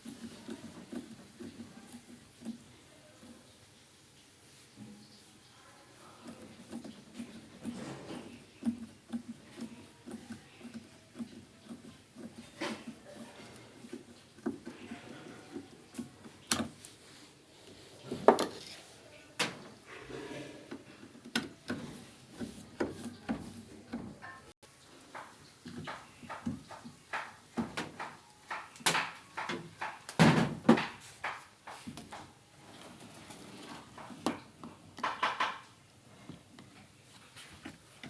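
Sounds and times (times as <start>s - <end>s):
hard parts clicking and knocking: 25.1s - 35.7s.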